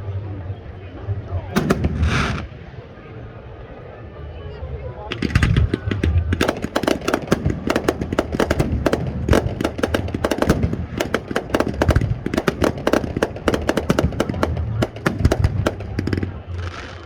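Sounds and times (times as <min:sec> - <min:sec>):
firework shell booms: 0:01.6 - 0:02.6, 0:05.1 - 0:17.0
fireworks crackling: 0:01.6 - 0:02.6, 0:05.1 - 0:17.0.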